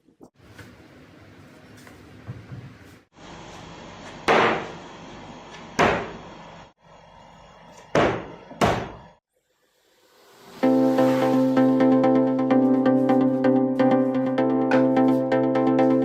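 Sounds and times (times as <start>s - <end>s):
loud sharp wooden bangs: 4.3s - 4.7s, 5.8s - 6.2s, 7.9s - 9.1s.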